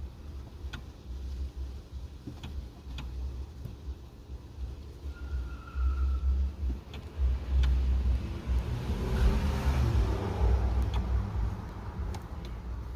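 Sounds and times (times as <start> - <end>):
car engine running: 6.3 - 12.9.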